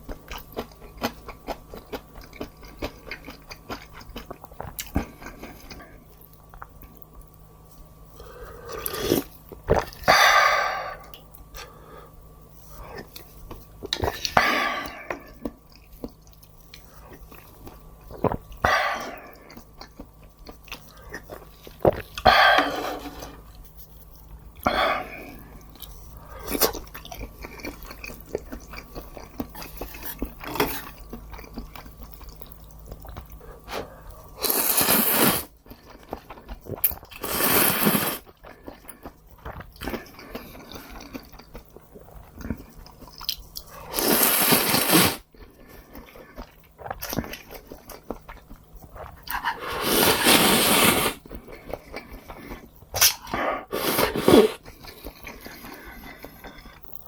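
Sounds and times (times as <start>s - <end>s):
person chewing crunchy food: 0.0s - 57.0s.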